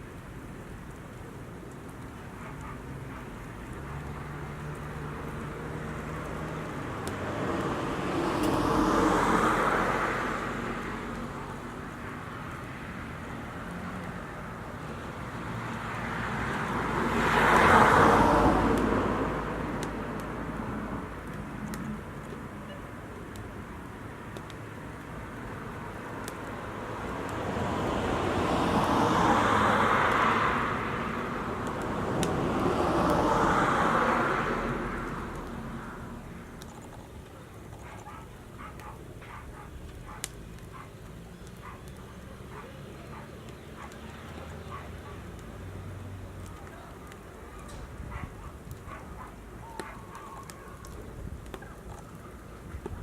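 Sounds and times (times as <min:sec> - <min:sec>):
vehicles passing by: 0:00.0 - 0:53.0.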